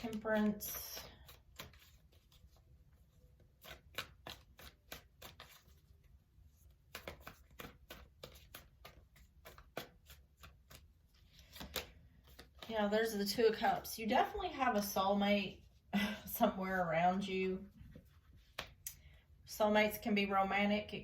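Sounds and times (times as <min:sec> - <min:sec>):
cards clicking on a table: 0:03.6 - 0:05.8, 0:06.9 - 0:12.7.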